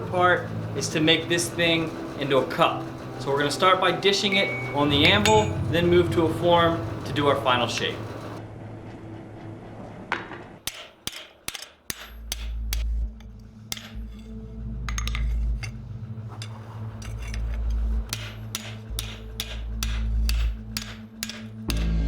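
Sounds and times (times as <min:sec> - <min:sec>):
background music with deep bass: 0:00.0 - 0:08.4, 0:12.0 - 0:22.0
hammer blows on steel: 0:03.6 - 0:08.1, 0:18.1 - 0:22.0.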